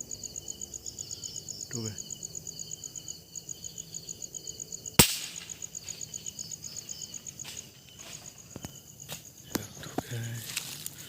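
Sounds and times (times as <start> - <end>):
crickets chirping: 0.0 - 11.0
gunshot: 5.0 - 5.6.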